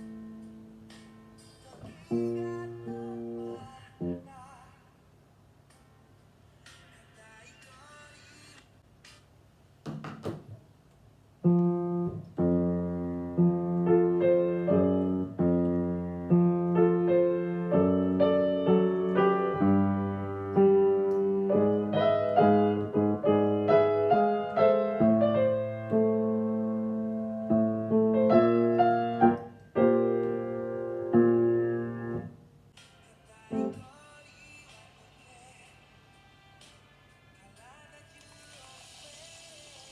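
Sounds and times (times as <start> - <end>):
solo piano pop melody: 0.0 - 4.4, 11.4 - 32.4, 33.5 - 34.0.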